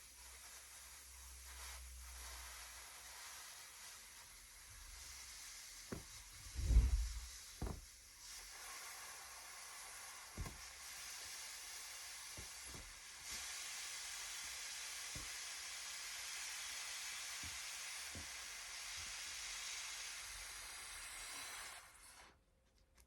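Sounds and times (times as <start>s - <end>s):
air hissing out of a balloon: 0.0s - 22.4s
soft low handling thumps: 5.9s - 7.9s.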